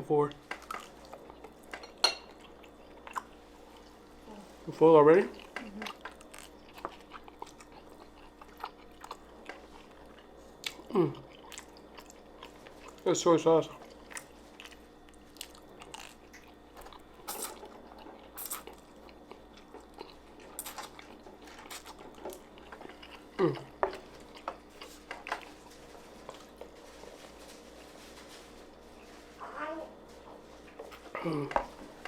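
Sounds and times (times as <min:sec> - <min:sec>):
chewing and biting food: 0:02.4 - 0:04.1, 0:05.3 - 0:13.1, 0:13.7 - 0:26.8.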